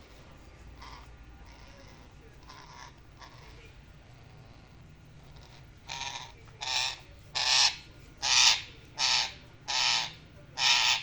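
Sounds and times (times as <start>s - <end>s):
parrot squawking: 0.8s - 3.6s, 5.3s - 11.0s.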